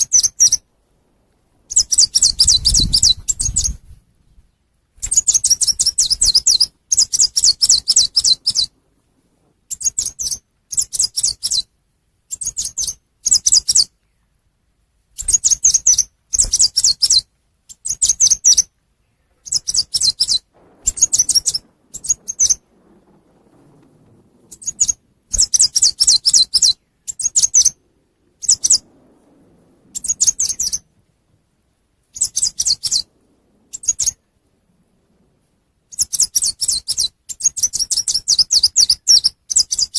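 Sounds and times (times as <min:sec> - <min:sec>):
songbird twittering: 0:01.6 - 0:08.8, 0:15.2 - 0:31.1, 0:32.1 - 0:39.9.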